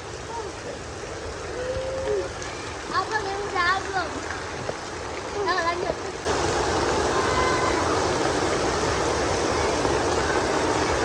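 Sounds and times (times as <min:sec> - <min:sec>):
falling water rushing: 0:00.0 - 0:11.0.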